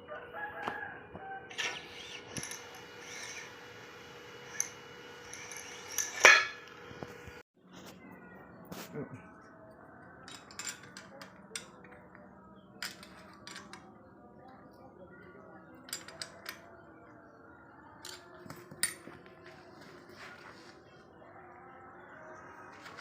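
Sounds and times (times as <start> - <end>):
faint voices: 6.9 - 23.0.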